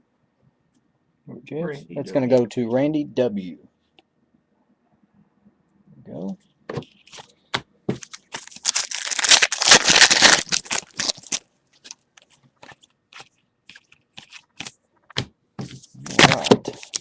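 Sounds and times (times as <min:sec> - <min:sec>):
cards being handled: 0:06.8 - 0:17.0
wrapper crinkling: 0:08.0 - 0:14.7, 0:16.2 - 0:17.0.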